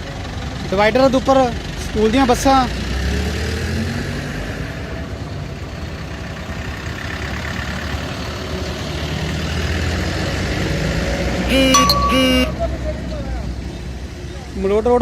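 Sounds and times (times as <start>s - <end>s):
heavy traffic rumble: 0.0s - 15.0s
vehicle horn blast: 11.5s - 12.8s.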